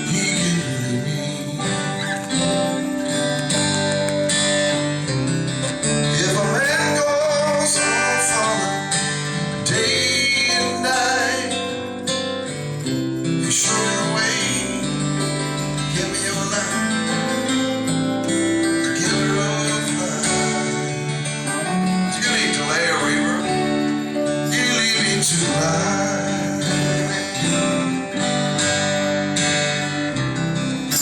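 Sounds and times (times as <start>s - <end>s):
wavering melody line: 0.0s - 13.5s
strummed guitar: 0.0s - 31.0s.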